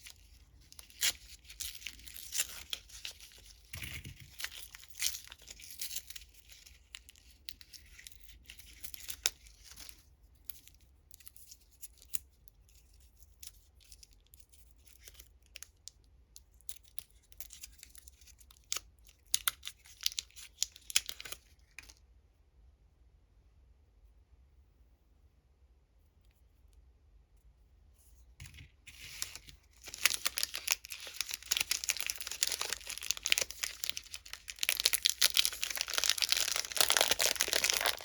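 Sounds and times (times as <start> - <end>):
candy wrappers crinkling: 0.0 - 10.0, 16.8 - 22.0, 28.9 - 38.0.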